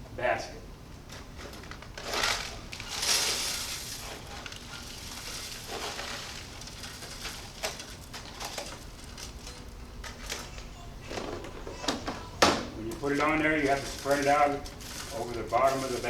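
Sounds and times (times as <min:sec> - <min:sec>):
scoop scraping metal basket: 0:01.5 - 0:09.7, 0:13.0 - 0:16.0
gravel mix pouring into basket: 0:01.8 - 0:09.7, 0:13.0 - 0:16.0.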